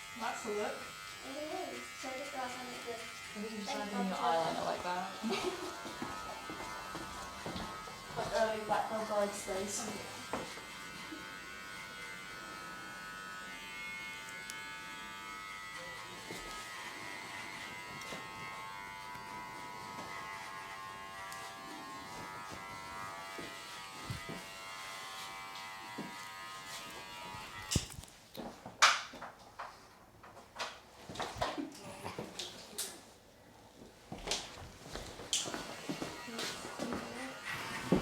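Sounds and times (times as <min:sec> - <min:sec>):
electric hair clipper running: 0:00.0 - 0:28.0, 0:35.4 - 0:38.0.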